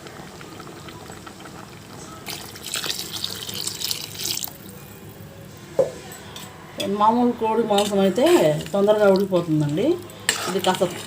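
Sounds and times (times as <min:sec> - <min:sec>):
water poured into a pot: 0:02.2 - 0:04.7.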